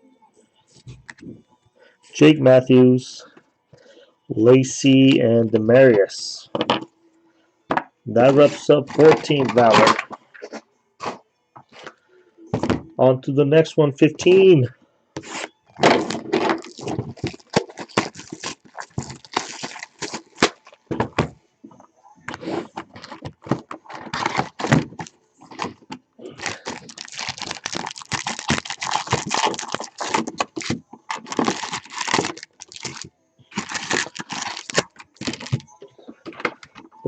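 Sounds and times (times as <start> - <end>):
plastic wrapping crinkling: 8.2 - 10.1, 15.2 - 21.2, 22.4 - 36.8
cardboard tearing: 15.2 - 20.8, 22.4 - 35.6.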